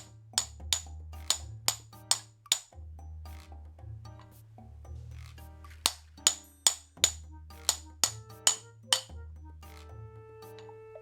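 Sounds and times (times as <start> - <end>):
clicking percussive beat: 0.0 - 3.5, 5.8 - 9.9
background music: 0.0 - 11.0.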